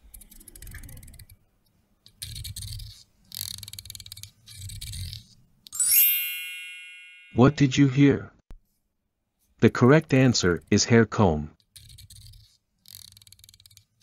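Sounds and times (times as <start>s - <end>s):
bell-like chime: 5.8s - 7.7s
comb teeth rattling: 11.6s - 14.0s.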